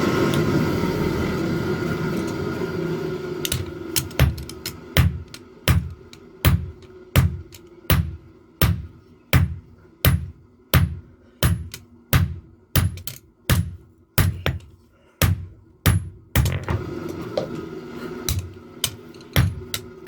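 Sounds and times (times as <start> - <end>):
hammer striking steel: 3.5 - 16.8, 18.3 - 20.0.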